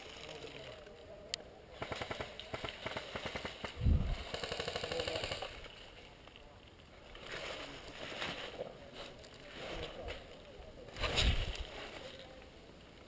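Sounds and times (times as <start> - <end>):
airsoft guns firing bursts: 1.8 - 5.6.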